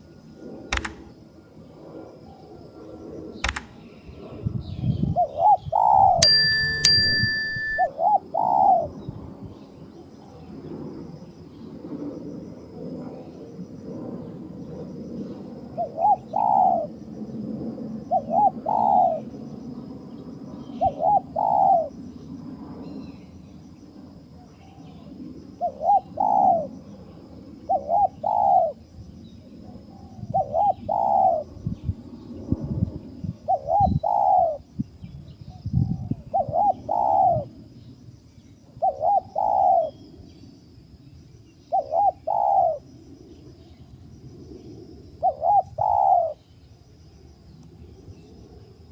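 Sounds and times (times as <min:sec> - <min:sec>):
dove cooing: 0:05.2 - 0:06.4, 0:07.8 - 0:08.9, 0:15.8 - 0:16.9, 0:18.1 - 0:19.3, 0:20.8 - 0:21.9, 0:25.6 - 0:26.7, 0:27.7 - 0:28.8, 0:33.5 - 0:34.6, 0:36.3 - 0:37.5, 0:38.8 - 0:40.0, 0:41.8 - 0:42.8, 0:45.2 - 0:46.4.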